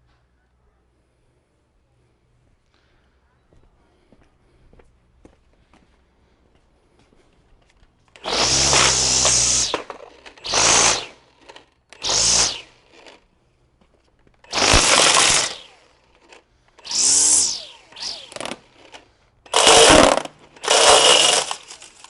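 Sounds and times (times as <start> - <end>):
string trimmer motor spinning up: 8.1 - 13.2, 14.4 - 22.0.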